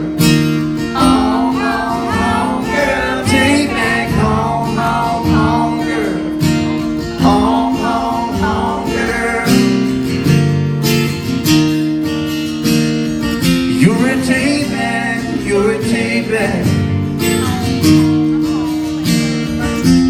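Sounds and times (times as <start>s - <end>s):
acoustic guitar strumming: 0.0s - 20.0s
live band playing country-pop: 0.0s - 20.0s
person singing: 0.9s - 9.9s.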